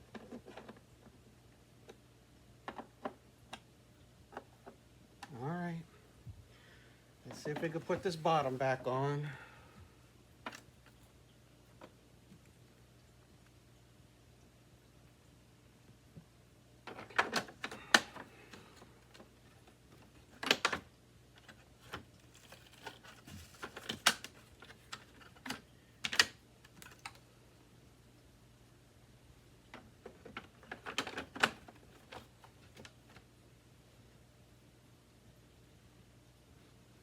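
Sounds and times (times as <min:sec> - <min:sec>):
plastic vacuum parts clicking: 0:16.9 - 0:19.3, 0:19.9 - 0:27.2, 0:29.7 - 0:33.0.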